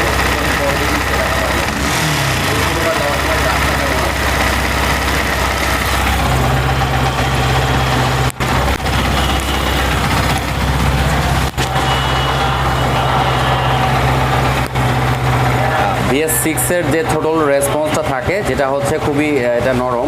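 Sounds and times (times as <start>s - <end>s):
motorcycle engine running: 0.0s - 19.5s.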